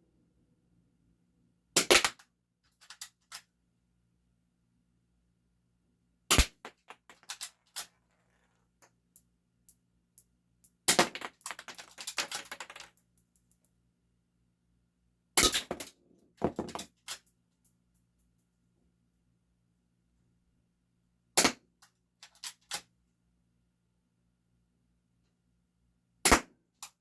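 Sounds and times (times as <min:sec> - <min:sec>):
small metallic clicks and rattles: 0:02.7 - 0:03.5, 0:06.7 - 0:13.7.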